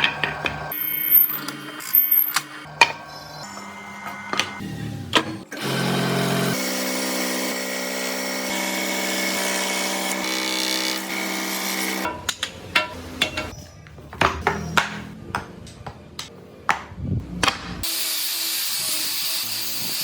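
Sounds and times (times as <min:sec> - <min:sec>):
power tool cutting wood: 0:03.6 - 0:12.1, 0:17.8 - 0:20.0.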